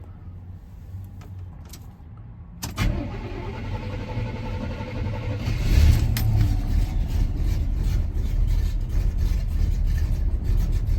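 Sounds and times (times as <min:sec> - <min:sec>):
truck engine starting and idling: 0:02.6 - 0:10.9.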